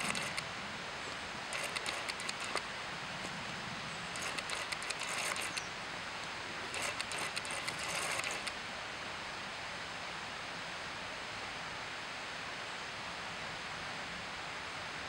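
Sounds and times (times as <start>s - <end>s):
rapid clicking and rattling: 0.0s - 0.5s, 1.5s - 3.4s, 4.0s - 8.6s.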